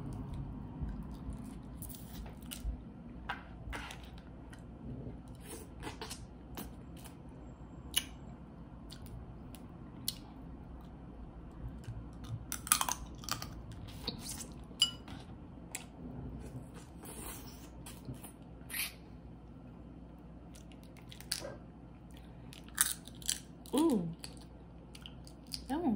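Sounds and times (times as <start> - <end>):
wet squishing and chewing: 0.0 - 2.9, 3.6 - 7.3, 8.8 - 14.7, 20.4 - 25.7.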